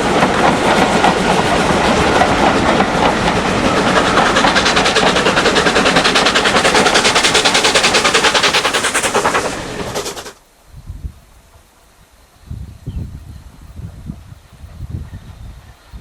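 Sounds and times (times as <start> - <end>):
steam locomotive exhaust beats: 0.0 - 10.5.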